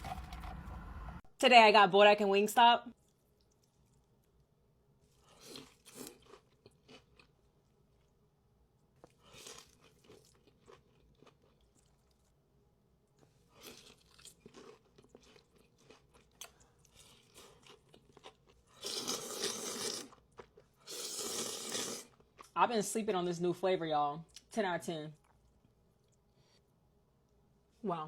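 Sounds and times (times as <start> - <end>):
chewing and crunching food: 2.9 - 22.6, 25.2 - 26.7.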